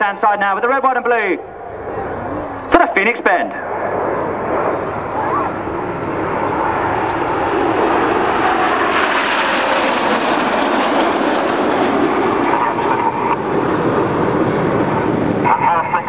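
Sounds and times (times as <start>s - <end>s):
jets flying in formation: 0.0s - 16.0s.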